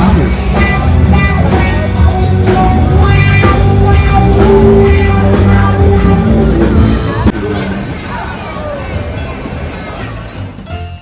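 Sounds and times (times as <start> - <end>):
loud rock music: 0.0 - 7.4.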